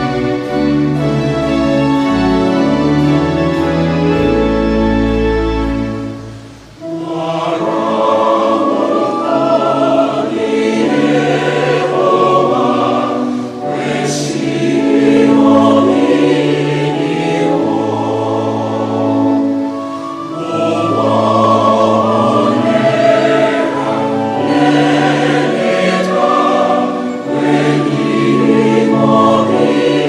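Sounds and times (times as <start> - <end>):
choir singing gospel: 0.0 - 6.0, 6.8 - 30.0
music: 0.0 - 30.0.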